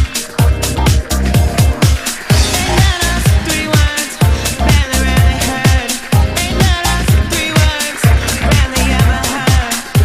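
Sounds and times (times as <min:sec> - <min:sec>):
synth melody: 0:00.0 - 0:05.5
electronic dance music: 0:00.0 - 0:10.0
kick drum: 0:00.0 - 0:10.0.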